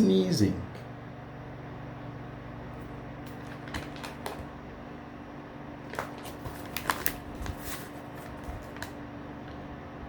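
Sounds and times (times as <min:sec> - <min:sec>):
steady low hum: 0:00.0 - 0:10.0.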